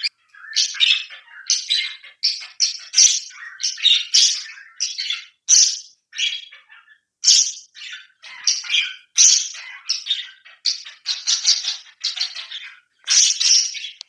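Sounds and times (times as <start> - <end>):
parrots chattering calls: 0.0 - 1.4, 9.2 - 14.0.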